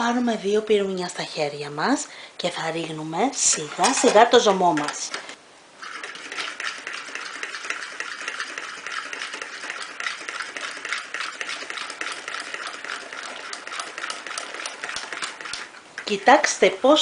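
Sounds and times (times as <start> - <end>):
electric hand mixer beating: 5.8 - 15.7.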